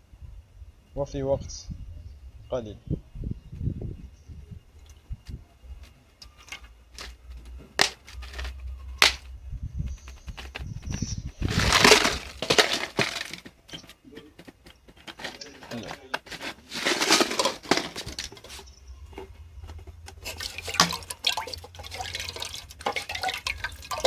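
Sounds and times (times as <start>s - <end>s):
sharp cracks and clinks: 11.5s - 14.0s.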